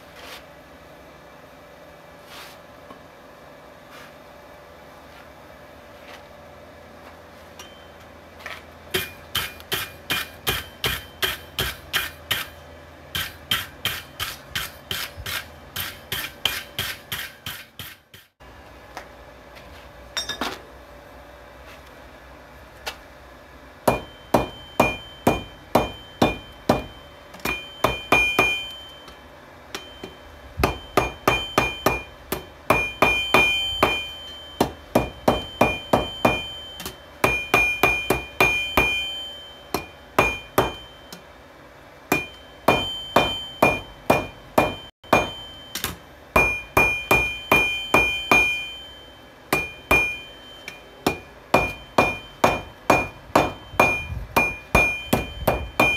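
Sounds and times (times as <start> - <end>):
anvil ringing: 8.9 - 12.6, 20.2 - 20.6, 23.8 - 41.3, 42.1 - 55.9
hammer striking steel on anvil: 8.9 - 18.4, 20.1 - 20.7, 23.8 - 41.3, 42.1 - 55.9.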